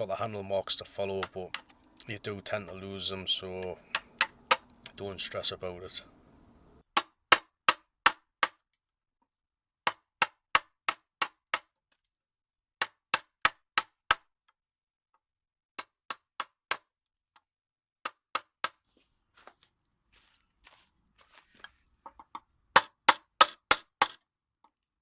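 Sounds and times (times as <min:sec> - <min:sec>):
chisel strikes on wood: 0:01.1 - 0:01.7, 0:03.6 - 0:04.7, 0:07.0 - 0:08.6, 0:09.8 - 0:11.7, 0:12.8 - 0:14.3, 0:15.8 - 0:18.8, 0:22.1 - 0:24.8.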